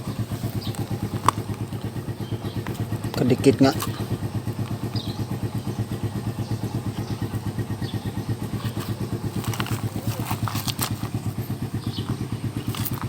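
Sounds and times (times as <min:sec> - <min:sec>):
small engine idling: 0:00.0 - 0:13.0.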